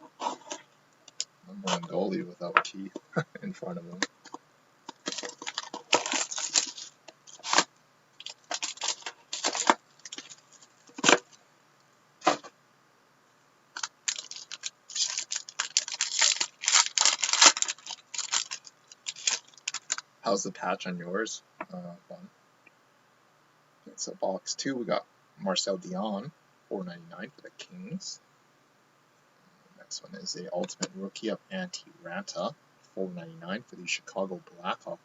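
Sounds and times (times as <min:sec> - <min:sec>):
plastic packaging crackling: 0:04.0 - 0:11.4, 0:13.8 - 0:20.0.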